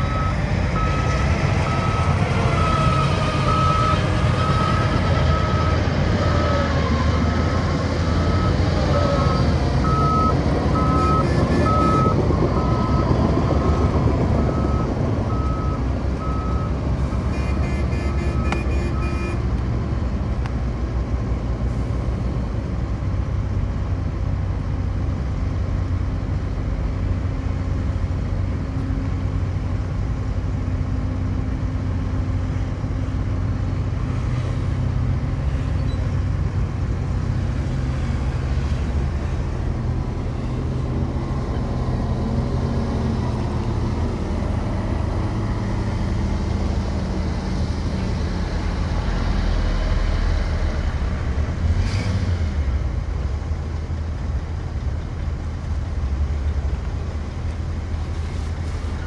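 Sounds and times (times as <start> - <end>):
reversing alarm beeping: 0.0 - 1.1, 1.7 - 6.7, 7.4 - 16.8
diesel machine engine running: 0.0 - 59.0.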